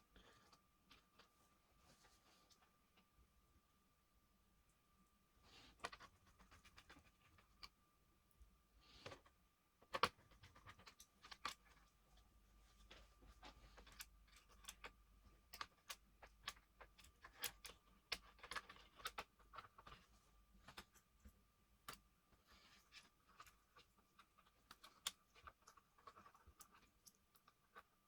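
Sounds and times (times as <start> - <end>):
small parts clicking and tapping: 12.9 - 20.1.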